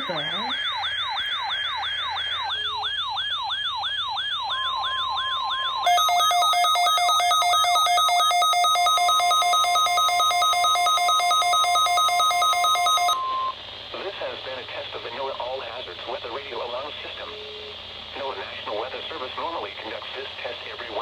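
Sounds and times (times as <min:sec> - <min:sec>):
yelping siren: 0:00.0 - 0:13.5
steady electronic beep: 0:04.4 - 0:13.5.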